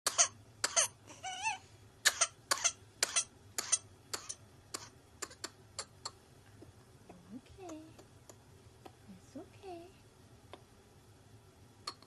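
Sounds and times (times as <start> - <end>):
infant hacking coughs: 0.1 - 1.0, 2.0 - 6.2
infant wavering squeal: 1.1 - 1.7.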